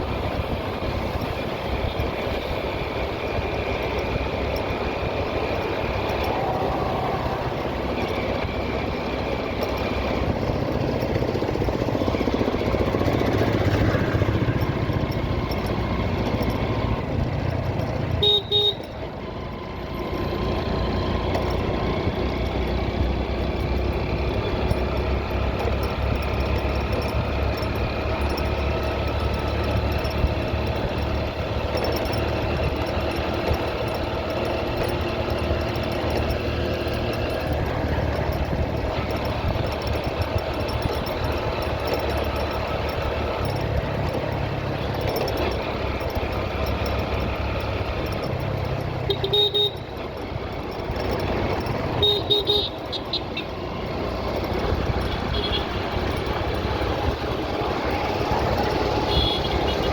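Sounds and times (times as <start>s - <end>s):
motorcycle engine running: 0.0s - 59.9s
road and wind noise: 0.0s - 59.9s
double horn beep: 18.1s - 18.9s, 49.1s - 49.8s, 52.0s - 53.1s, 59.1s - 59.8s.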